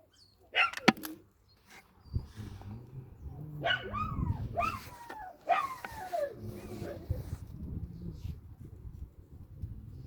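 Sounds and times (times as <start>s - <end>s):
dog barking: 0.5s - 0.9s, 3.6s - 4.9s, 5.5s - 5.9s.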